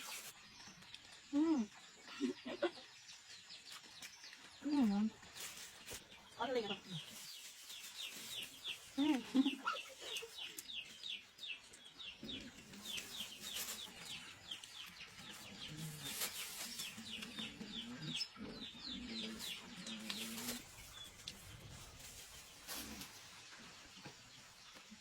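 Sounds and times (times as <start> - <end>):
chicks peeping: 6.6 - 23.0.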